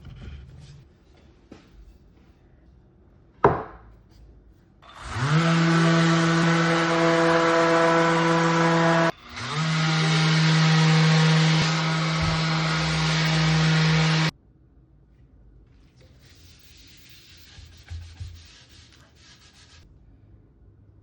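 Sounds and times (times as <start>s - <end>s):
power tool motor whine: 4.8s - 14.3s.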